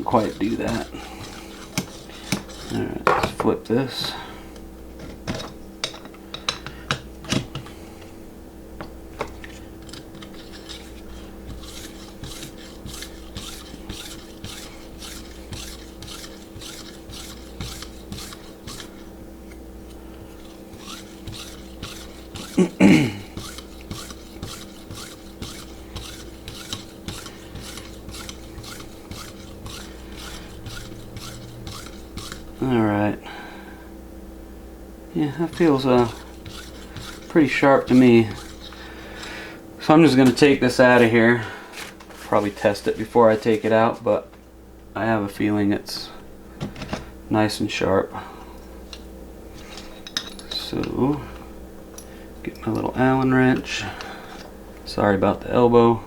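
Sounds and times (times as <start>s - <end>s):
leather strop rubbing knife edge: 23.4s - 32.6s.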